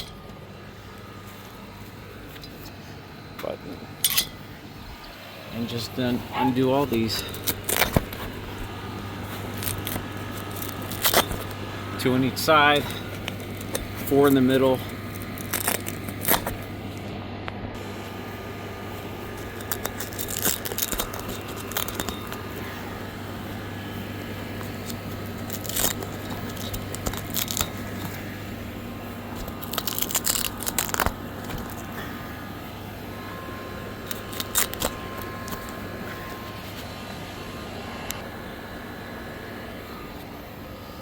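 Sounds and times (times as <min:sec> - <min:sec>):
steady low hum: 0:00.0 - 0:41.0
velcro straps ripping open: 0:07.2 - 0:11.6, 0:12.9 - 0:16.7, 0:19.3 - 0:22.7, 0:24.6 - 0:28.2, 0:29.3 - 0:32.0, 0:34.0 - 0:35.8.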